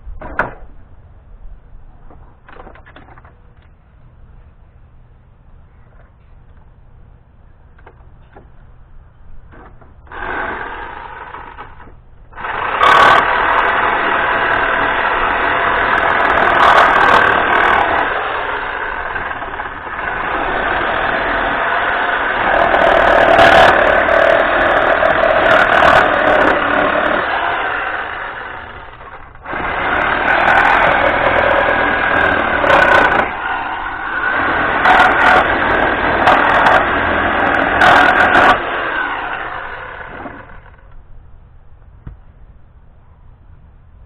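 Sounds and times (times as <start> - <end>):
power tool running: 10.1 - 40.9.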